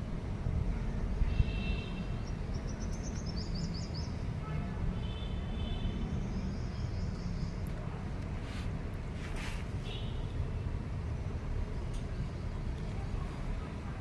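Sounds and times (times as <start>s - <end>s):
small birds chirping: 2.1s - 4.3s, 6.0s - 8.0s.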